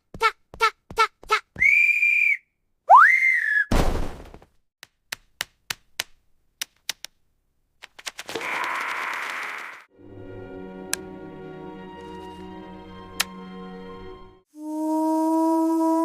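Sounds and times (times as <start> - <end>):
high whistle: 1.6 - 3.7
sliding whistle: 1.6 - 3.7
thump: 3.7 - 4.4.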